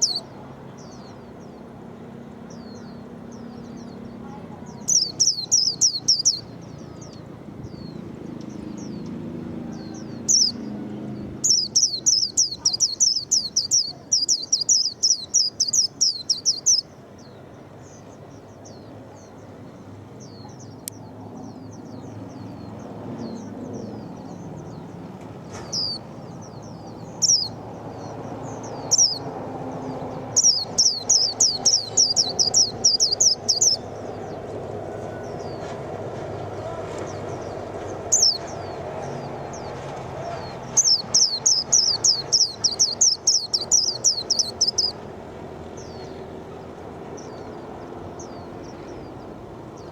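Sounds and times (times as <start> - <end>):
bird chirps: 0.0 - 1.3, 2.5 - 9.1, 9.8 - 10.7, 11.4 - 16.9, 25.6 - 34.3, 36.6 - 45.0
bird singing rapid falling notes: 0.0 - 1.7, 2.5 - 17.4, 25.6 - 35.8, 36.6 - 49.9.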